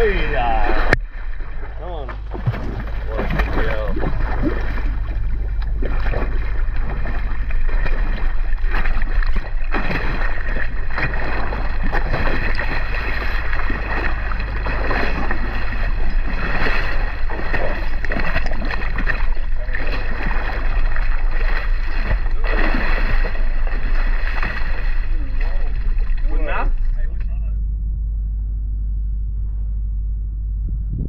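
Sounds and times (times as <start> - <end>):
water splashing: 0.0 - 27.3
steady low rumble: 0.0 - 31.0.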